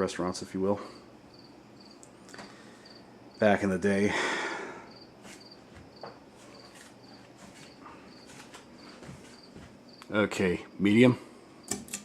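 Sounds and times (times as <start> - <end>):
ceiling fan running: 0.0 - 12.0
cricket chirping: 1.1 - 3.6, 4.2 - 10.8.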